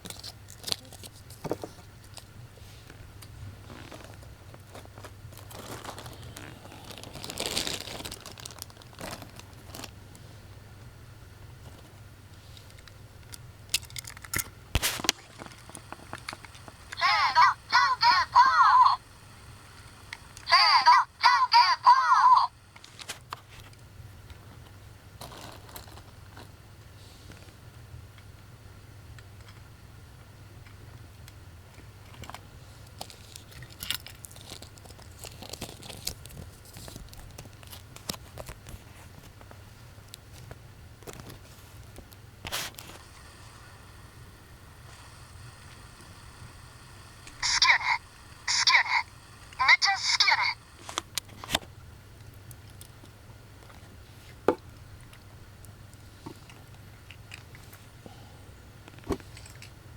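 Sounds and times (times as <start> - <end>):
plastic packaging crinkling: 3.9 - 10.0
steady low hum: 8.6 - 25.2, 39.3 - 59.9.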